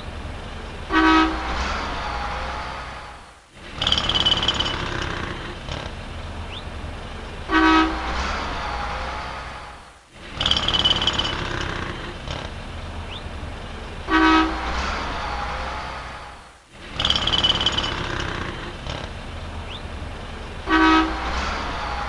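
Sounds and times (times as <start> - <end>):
traffic rumble: 0.0 - 22.0
car horn honk: 0.9 - 1.6, 7.5 - 8.2, 14.1 - 15.0, 20.6 - 21.4.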